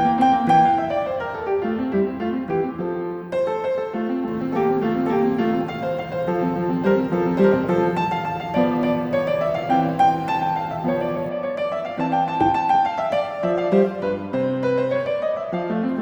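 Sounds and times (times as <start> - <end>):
piano music: 4.3 - 16.0.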